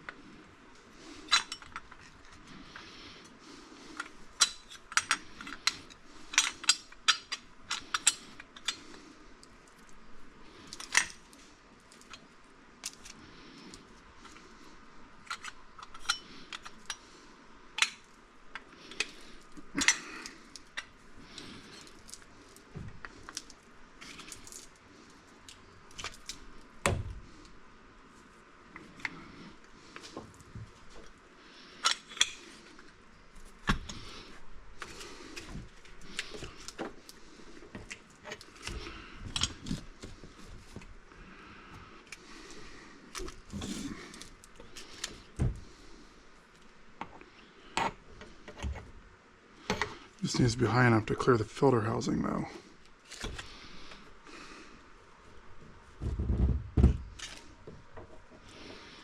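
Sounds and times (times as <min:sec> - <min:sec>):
dull thump: 0:56.0 - 0:57.1.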